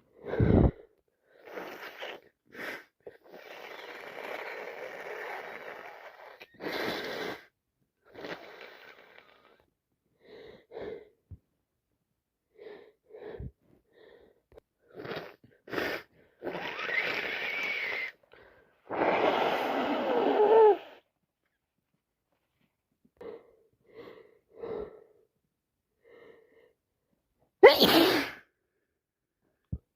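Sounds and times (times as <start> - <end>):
person blowing nose: 1.4 - 7.5, 8.1 - 9.4, 14.9 - 18.2, 18.9 - 21.0, 27.6 - 28.5
person sniffing congested nose: 1.4 - 7.5, 8.1 - 9.5, 14.9 - 18.2, 18.9 - 21.0, 27.6 - 28.5.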